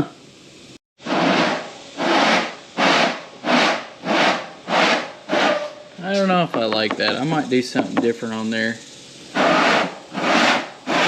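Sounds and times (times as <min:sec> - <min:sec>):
hand tool rasping: 0:09.3 - 0:11.0.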